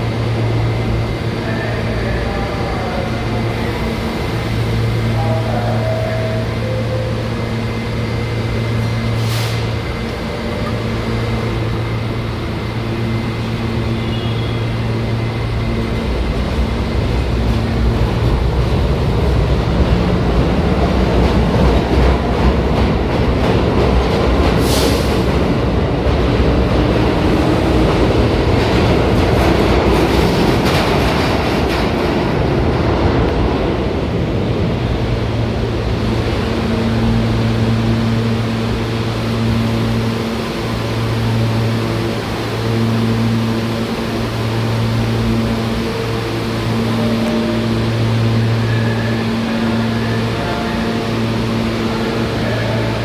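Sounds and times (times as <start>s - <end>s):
train rumbling and clattering past: 0.0s - 53.0s.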